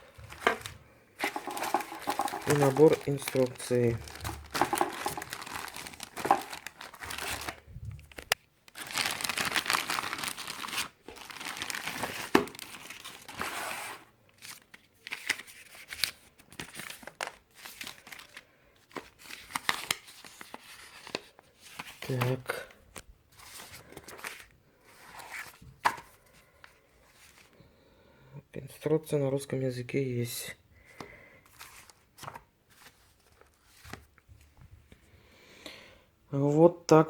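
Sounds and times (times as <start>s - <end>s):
packaging crinkling and tearing: 0.2s - 22.5s.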